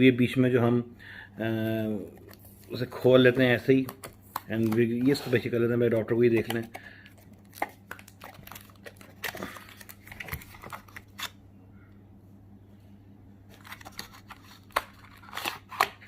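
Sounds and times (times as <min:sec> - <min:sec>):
faint steady hum: 0:00.0 - 0:16.0
seal tearing: 0:07.4 - 0:11.4, 0:13.6 - 0:16.0
cardboard box crinkling and rustling: 0:07.5 - 0:11.3.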